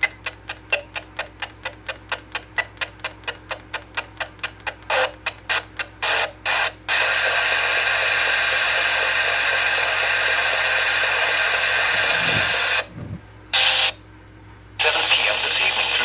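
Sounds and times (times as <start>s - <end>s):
radio static crackling: 4.9s - 13.9s, 14.8s - 16.0s
radio static hiss: 4.9s - 13.9s, 14.8s - 16.0s.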